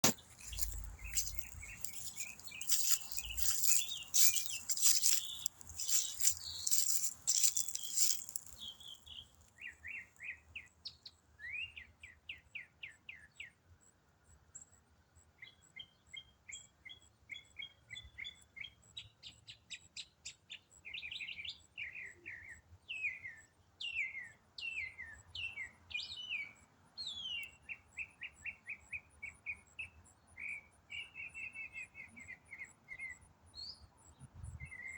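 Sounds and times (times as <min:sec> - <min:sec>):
songbird singing: 0:00.0 - 0:13.6, 0:15.4 - 0:34.9.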